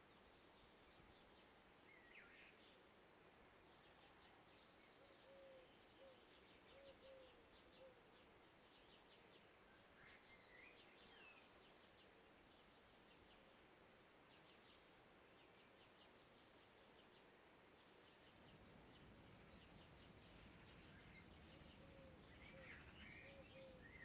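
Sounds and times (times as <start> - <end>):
small birds chirping and singing: 17.8 - 24.0.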